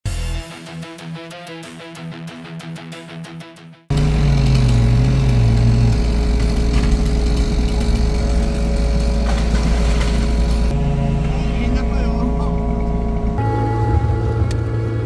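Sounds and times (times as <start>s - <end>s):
engine rumbling: 3.9s - 15.0s
lower engine note: 3.9s - 15.0s.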